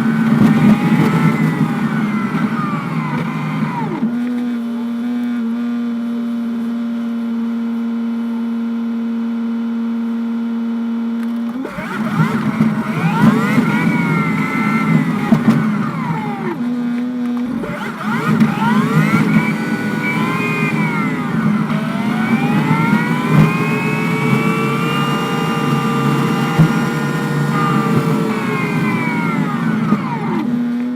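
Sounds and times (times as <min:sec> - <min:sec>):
bus engine idling and pulling away: 0:00.0 - 0:05.4, 0:11.6 - 0:30.9.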